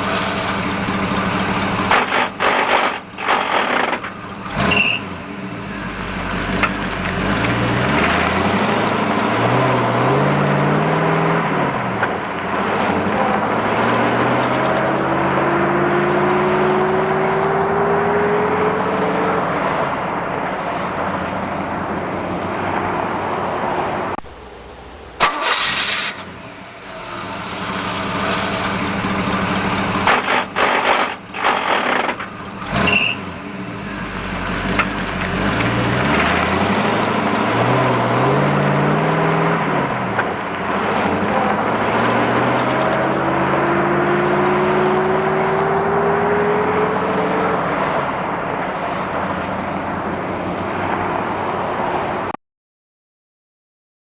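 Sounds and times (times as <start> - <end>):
gears grinding and clunking: 0.0 - 5.1, 12.0 - 16.8, 25.2 - 33.3, 40.1 - 45.3
vehicle engine revving: 0.0 - 20.0, 26.9 - 49.5.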